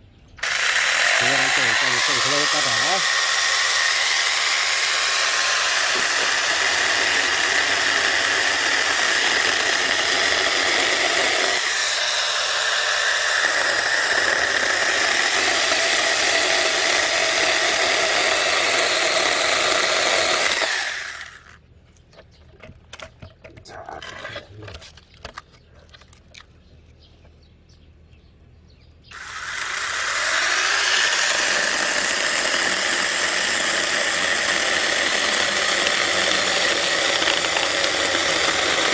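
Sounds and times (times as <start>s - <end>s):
mini chainsaw cutting wood: 0.4s - 21.6s, 29.1s - 38.9s
small clicks and knocks: 21.9s - 23.7s, 24.7s - 27.4s.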